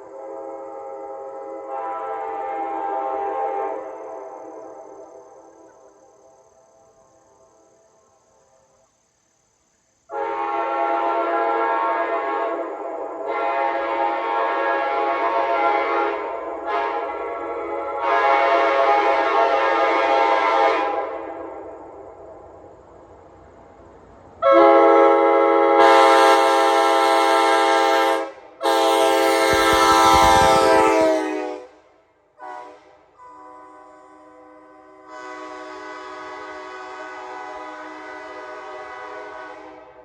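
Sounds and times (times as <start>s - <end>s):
locomotive air horn blasts: 0.1s - 3.9s, 10.1s - 21.2s, 24.4s - 31.8s, 32.4s - 40.0s.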